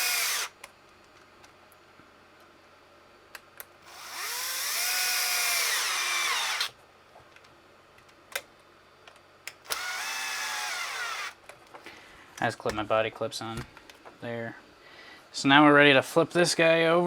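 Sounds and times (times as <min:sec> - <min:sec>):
power driver motor whining: 0:00.0 - 0:00.6, 0:03.8 - 0:06.7, 0:09.6 - 0:11.4.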